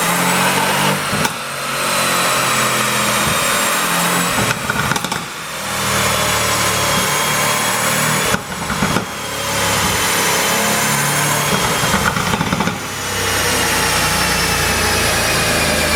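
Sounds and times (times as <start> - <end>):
car engine revving loud: 0.0 - 15.9
exhaust crackles and pops: 3.1 - 5.6, 6.3 - 10.3, 11.3 - 13.1.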